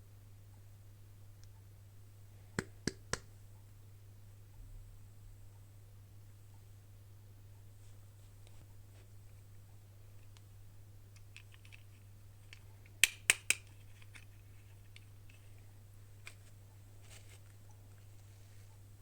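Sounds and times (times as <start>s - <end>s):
sharp plastic clicks: 11.1s - 14.3s
plastic packaging taps and clicks: 12.5s - 14.3s.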